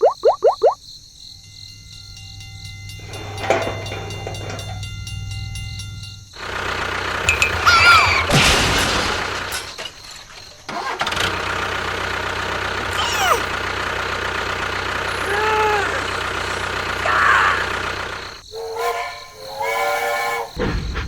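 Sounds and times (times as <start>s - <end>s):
engine running: 1.4s - 19.0s
whistle-like tones: 15.2s - 21.0s.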